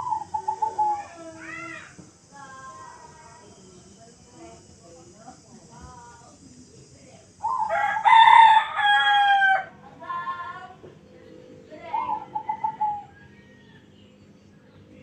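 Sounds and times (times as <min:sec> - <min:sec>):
rooster crowing: 0:07.4 - 0:09.8.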